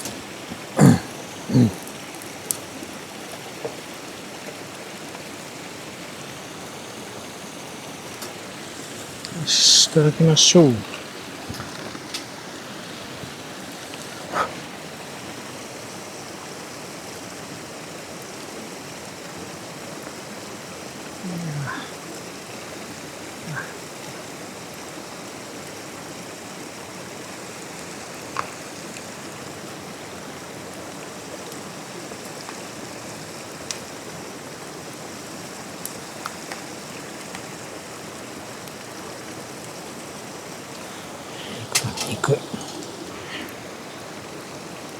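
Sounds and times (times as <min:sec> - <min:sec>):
stream rushing: 0:00.0 - 0:44.9.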